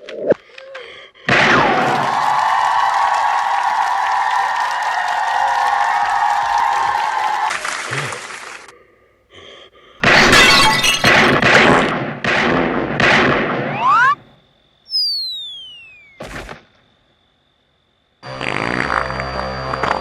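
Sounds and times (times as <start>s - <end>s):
crashing and breaking glass: 10.0s - 11.9s
falling whistle: 13.7s - 20.0s.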